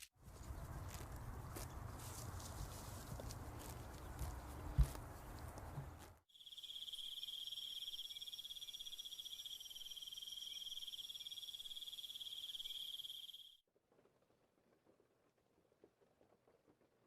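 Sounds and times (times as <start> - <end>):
cricket trilling: 6.3 - 13.6.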